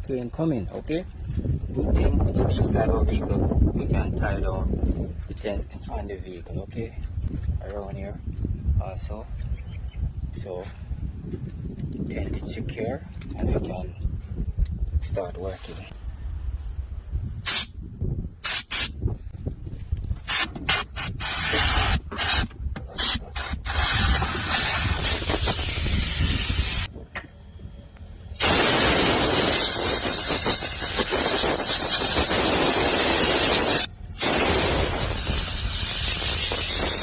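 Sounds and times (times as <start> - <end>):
wind rumble on microphone: 0.0 - 37.0
sprayer hissing: 20.3 - 26.9, 28.4 - 37.0.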